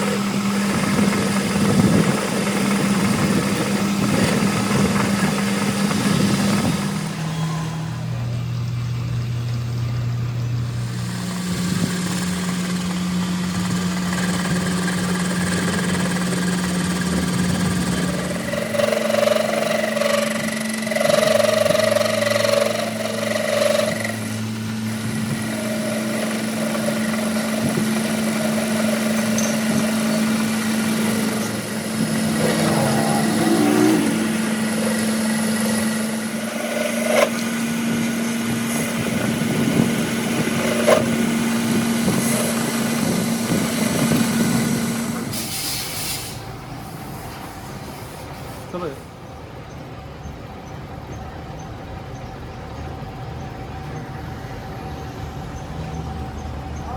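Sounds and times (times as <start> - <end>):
motor humming: 0.0 - 47.9.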